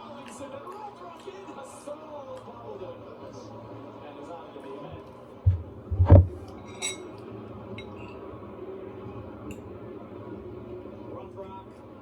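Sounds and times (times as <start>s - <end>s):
dull thumps: 5.4s - 6.4s
dishware clinking: 5.5s - 7.2s.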